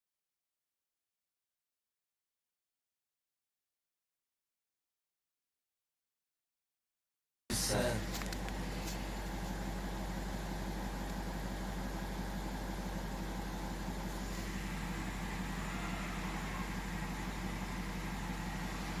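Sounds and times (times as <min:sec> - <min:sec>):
car engine idling: 0:07.5 - 0:19.0.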